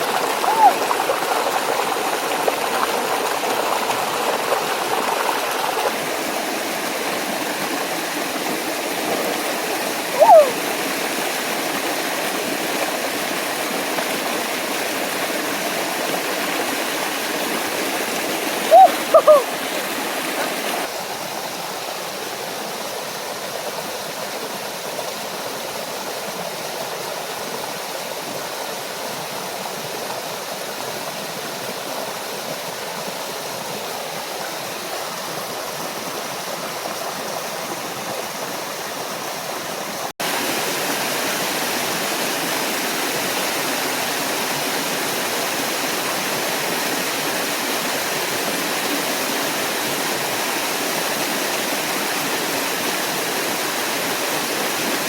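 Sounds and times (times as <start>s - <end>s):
waterfall and stream rushing: 0.0s - 55.0s.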